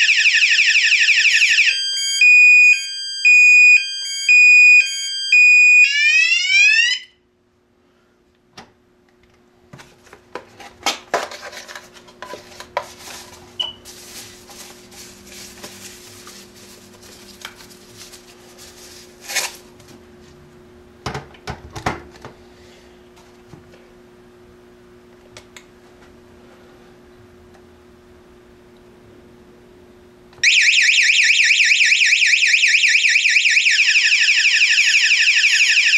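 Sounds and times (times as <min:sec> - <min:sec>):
alarm siren stepped tones: 0:00.0 - 0:07.2, 0:30.4 - 0:35.9.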